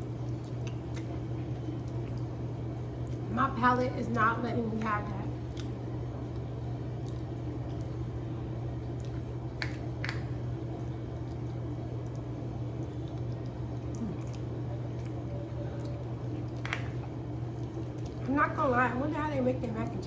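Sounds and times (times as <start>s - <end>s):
wet chewing: 0.0s - 3.3s, 4.7s - 18.3s
steady low hum: 0.0s - 20.0s.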